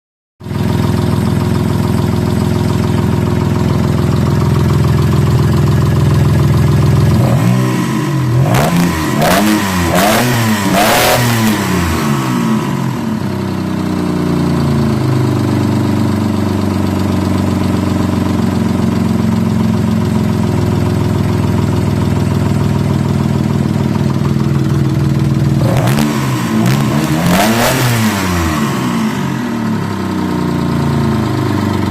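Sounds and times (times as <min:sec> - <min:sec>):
engine idling: 0:00.4 - 0:31.9
engine revving in throttle blips: 0:07.1 - 0:13.0, 0:25.6 - 0:30.0.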